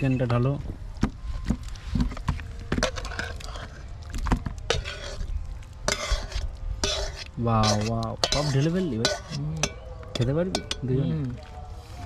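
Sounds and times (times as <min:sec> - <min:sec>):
spoon scraping a pot: 0:02.0 - 0:10.8
wet slops of curry: 0:02.1 - 0:11.6.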